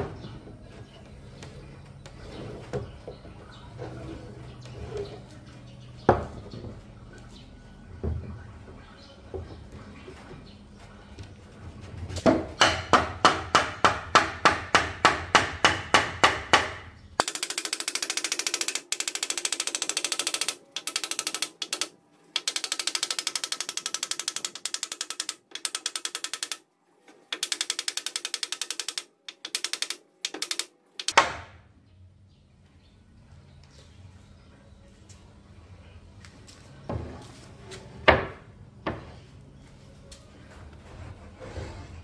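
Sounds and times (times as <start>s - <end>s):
ratchet clicking rapidly: 17.2s - 26.6s, 27.3s - 31.1s.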